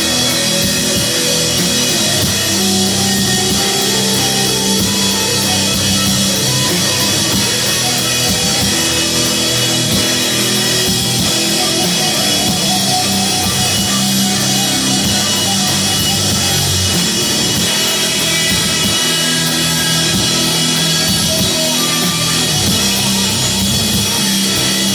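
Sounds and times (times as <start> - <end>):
distorted guitar and bass: 0.0 - 24.9
drum kit: 0.0 - 24.9.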